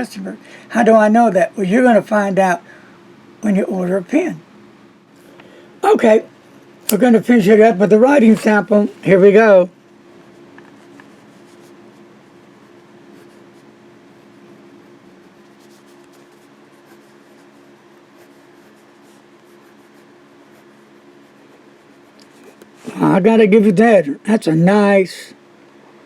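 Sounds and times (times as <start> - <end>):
steady low hum: 0.0 - 26.0
pen scratching on paper: 10.2 - 12.1, 13.1 - 23.2.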